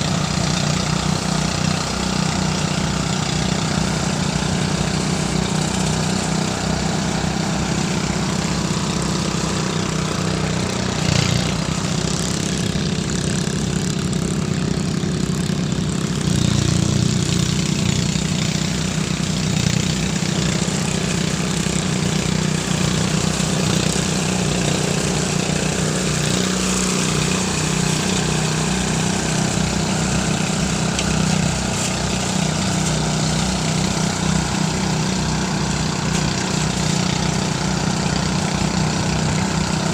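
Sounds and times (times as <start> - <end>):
threshing machine engine hum: 0.0 - 39.9.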